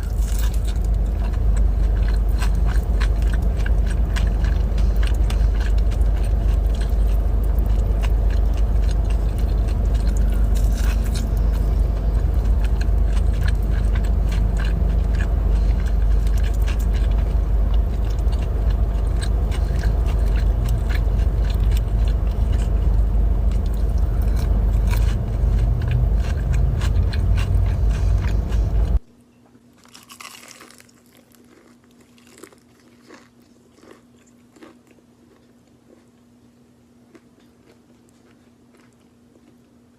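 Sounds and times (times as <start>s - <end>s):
loud low rumble: 0.0s - 29.0s
chewing and crunching food: 0.0s - 39.9s
faint steady hum: 0.0s - 39.9s.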